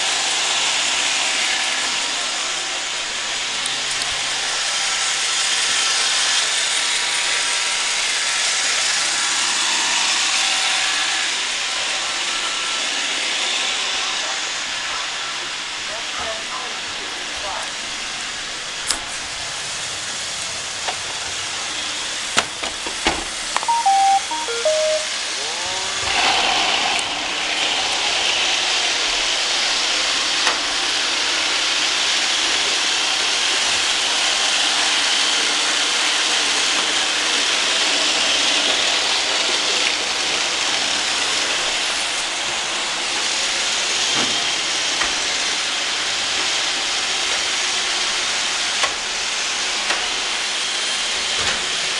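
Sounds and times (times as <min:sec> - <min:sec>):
stepped electronic beeps: 0:23.6 - 0:25.1.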